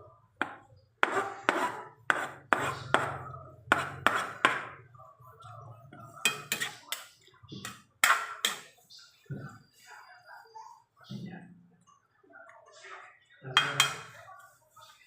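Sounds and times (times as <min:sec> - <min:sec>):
utensils knocking cookware: 0:06.2 - 0:07.0, 0:07.6 - 0:08.8, 0:13.6 - 0:14.1.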